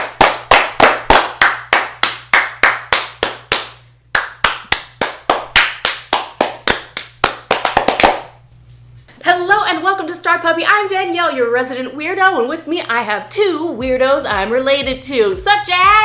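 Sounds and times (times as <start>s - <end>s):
hand claps in rhythm: 0.0s - 8.4s.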